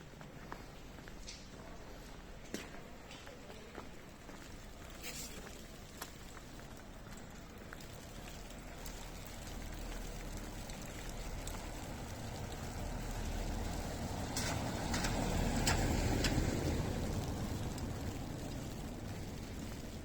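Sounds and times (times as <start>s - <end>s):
footsteps: 0.0s - 7.9s
vehicle approaching: 6.8s - 20.0s.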